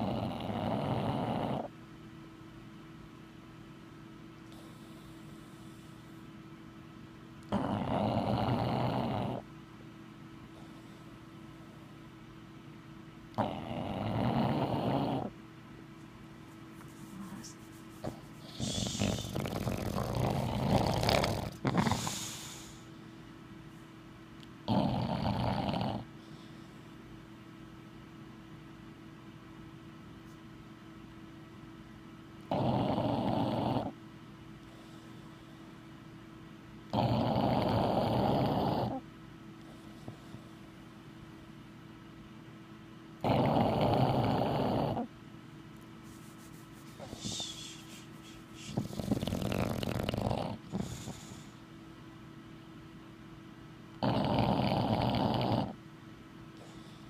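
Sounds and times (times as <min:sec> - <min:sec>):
dog snoring: 0:00.0 - 0:01.7, 0:07.5 - 0:09.5, 0:13.3 - 0:15.4, 0:18.0 - 0:22.8, 0:24.6 - 0:26.4, 0:32.5 - 0:34.0, 0:36.9 - 0:39.1, 0:43.2 - 0:45.1, 0:47.0 - 0:51.6, 0:54.0 - 0:55.8
dog snuffle: 0:13.4 - 0:15.3, 0:16.4 - 0:22.8, 0:46.0 - 0:51.5.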